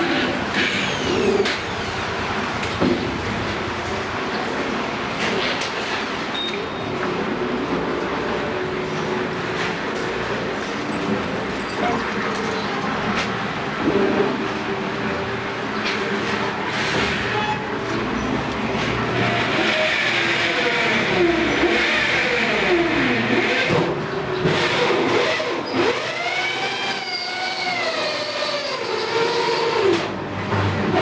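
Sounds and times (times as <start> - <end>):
cnc router motors whining: 19.2 - 23.7.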